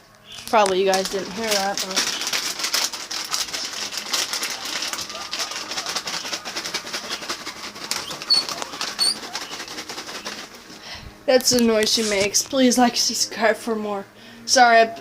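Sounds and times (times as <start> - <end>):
crackling rustle: 0.3 - 11.0
guinea pig squeak: 3.4 - 10.4.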